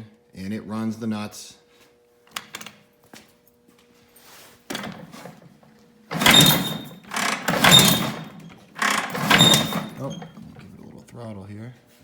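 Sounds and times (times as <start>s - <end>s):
motorcycle engine starting: 6.1s - 10.8s.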